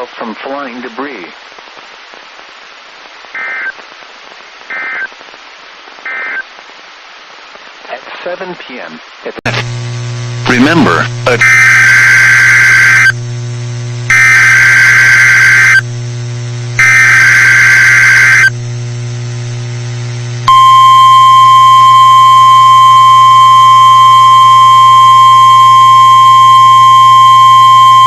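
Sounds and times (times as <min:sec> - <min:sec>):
buzzy data bursts: 0:09.5 - 0:16.0, 0:16.7 - 0:18.6
low hum: 0:09.5 - 0:28.0
single-pitch warning alarm tone: 0:11.4 - 0:13.2, 0:14.1 - 0:15.8, 0:16.8 - 0:18.5, 0:20.5 - 0:28.0.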